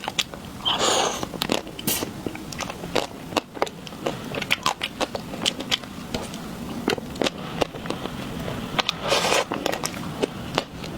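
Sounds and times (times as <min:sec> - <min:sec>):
mouth clicks and chewing smacks: 0:00.0 - 0:10.9
short hissing noise: 0:00.6 - 0:01.3.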